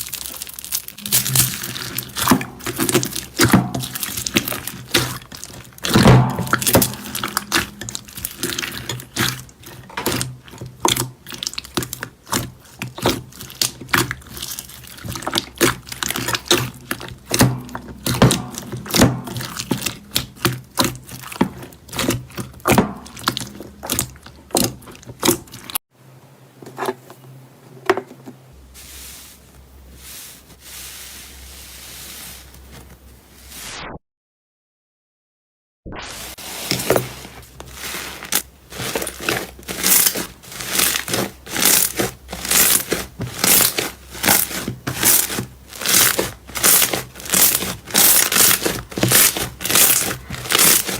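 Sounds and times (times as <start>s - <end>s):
slime squishing: 0.0s - 25.8s, 36.2s - 50.9s.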